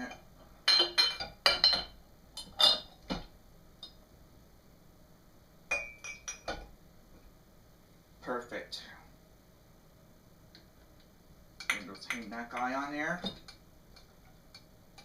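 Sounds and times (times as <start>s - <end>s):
dishes and glasses clinking: 0.0s - 4.0s, 5.7s - 6.7s, 11.6s - 13.6s.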